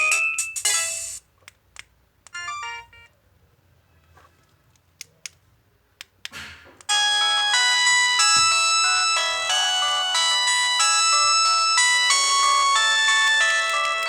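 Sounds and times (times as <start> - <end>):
electronic phone alarm melody: 2.4 - 3.1, 6.9 - 14.0.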